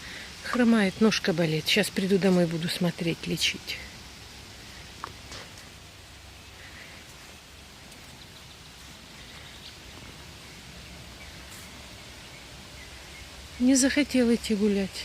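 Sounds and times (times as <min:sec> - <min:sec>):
soft steady hiss: 0:00.0 - 0:15.0
distant bird chirps: 0:06.2 - 0:14.1.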